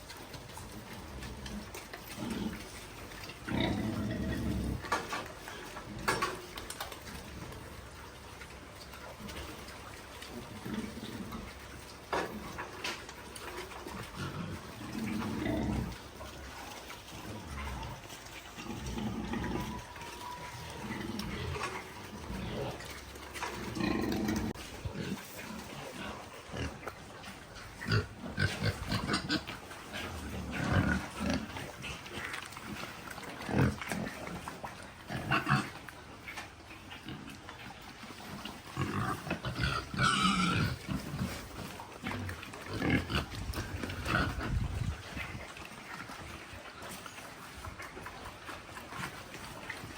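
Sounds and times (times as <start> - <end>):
pigs grunting: 0.0 - 49.9
pig squealing: 16.6 - 26.9, 38.8 - 41.4.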